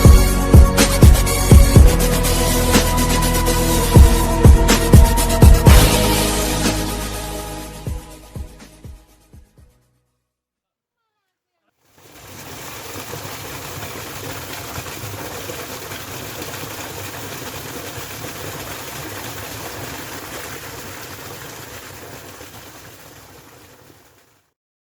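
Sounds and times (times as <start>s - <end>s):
waterfall roaring: 12.0s - 23.7s.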